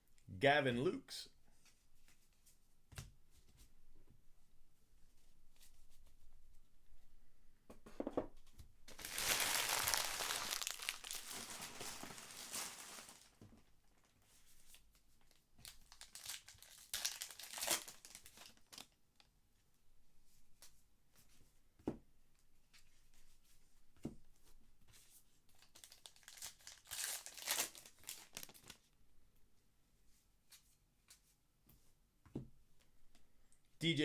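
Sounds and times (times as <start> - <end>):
wrapper tearing and crinkling: 8.9 - 13.4, 15.6 - 19.0, 25.6 - 28.8.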